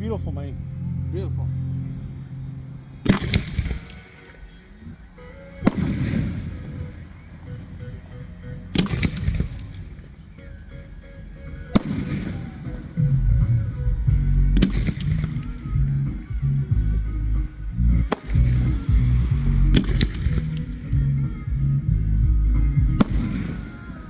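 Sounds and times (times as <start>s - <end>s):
background music: 0.0s - 24.0s
fireworks booming and crackling: 3.1s - 4.2s, 5.7s - 7.3s, 8.8s - 10.3s, 11.8s - 13.6s, 14.2s - 16.6s, 18.1s - 21.0s, 23.0s - 24.0s.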